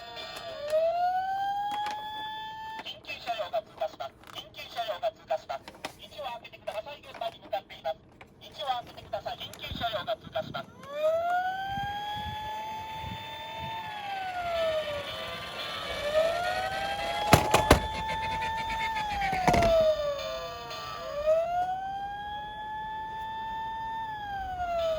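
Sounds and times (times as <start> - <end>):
toy electronic siren wailing: 0.3 - 2.8, 9.7 - 24.9
sharp clacks: 16.7 - 20.1.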